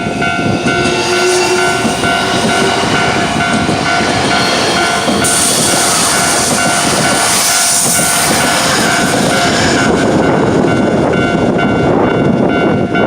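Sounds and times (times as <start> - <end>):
train wheels rumbling on rails: 0.0 - 13.0
level crossing warning bell: 10.2 - 13.0.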